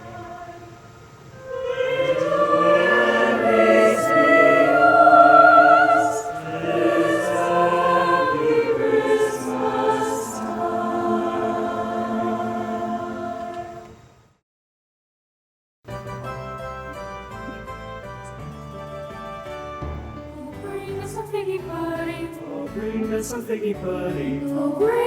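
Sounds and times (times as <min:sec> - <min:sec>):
choir singing: 0:00.0 - 0:14.0, 0:20.4 - 0:25.0.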